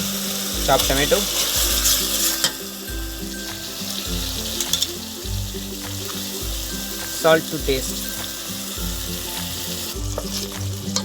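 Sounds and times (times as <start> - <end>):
background music with low pulses: 0.0 - 11.0
tomato sizzling in hot oil: 0.0 - 11.0.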